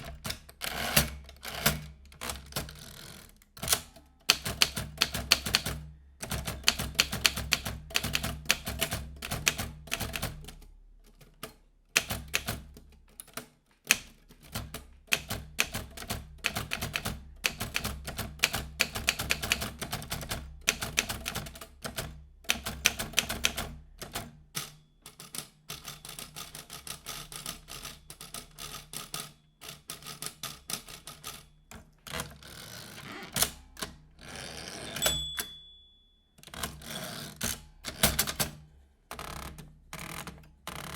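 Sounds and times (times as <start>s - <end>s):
typewriter carriage bell: 34.9s - 37.3s
typewriter key strikes: 35.0s - 35.8s.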